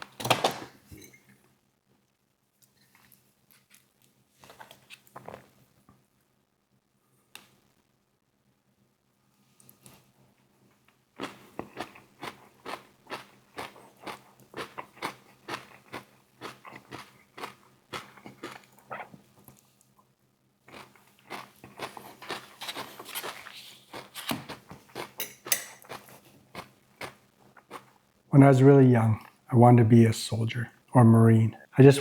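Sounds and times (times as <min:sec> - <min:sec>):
crunchy chewing of fried chicken: 0:10.9 - 0:28.2.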